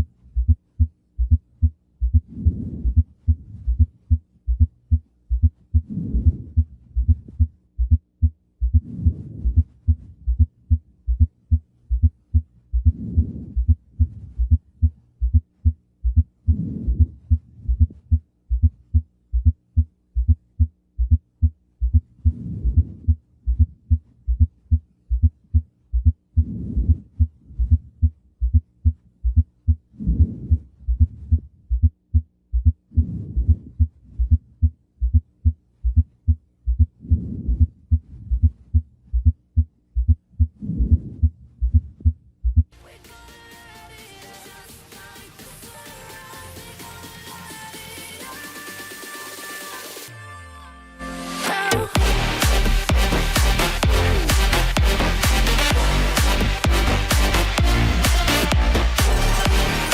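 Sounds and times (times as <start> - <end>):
heartbeat thumps through stethoscope: 0.0 - 42.7.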